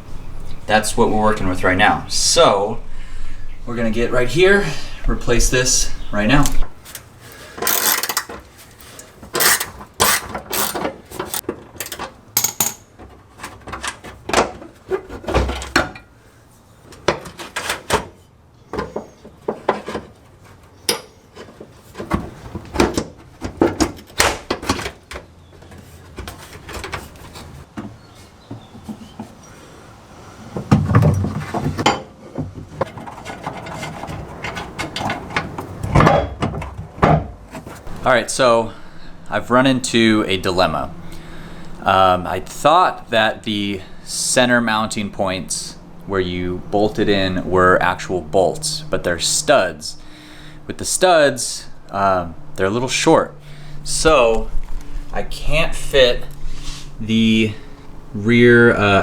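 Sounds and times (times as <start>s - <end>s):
hand tools clicking and clinking: 6.9s - 12.9s.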